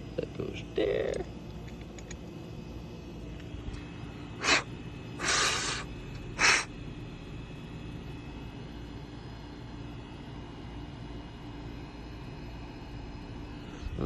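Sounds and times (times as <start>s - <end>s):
pressurized spray hissing: 5.2s - 6.7s.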